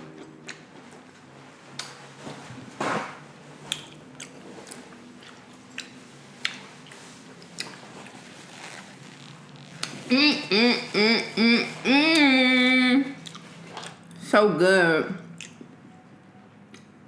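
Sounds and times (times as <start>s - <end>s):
person chewing: 1.7s - 2.0s, 3.7s - 10.5s, 13.2s - 14.2s, 15.3s - 15.8s
wet mouth clicks and smacks: 15.4s - 15.7s.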